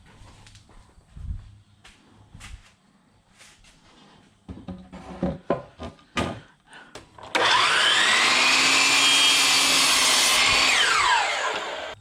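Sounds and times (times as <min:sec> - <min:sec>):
electric power saw whining: 0:07.2 - 0:12.0.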